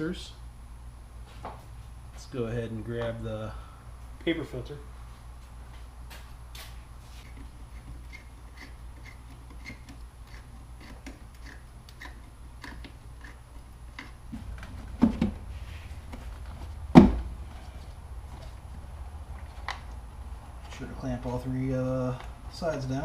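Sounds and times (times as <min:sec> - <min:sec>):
plastic parts knocking: 0:14.0 - 0:15.4.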